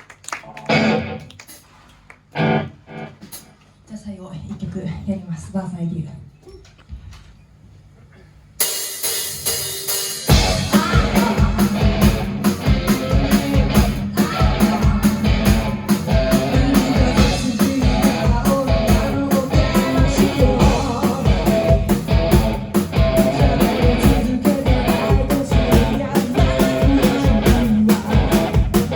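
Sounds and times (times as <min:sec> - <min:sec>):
rock band playing live: 0:00.7 - 0:01.4, 0:02.4 - 0:03.4, 0:09.0 - 0:28.9
drums and bass driving beat: 0:08.6 - 0:28.9.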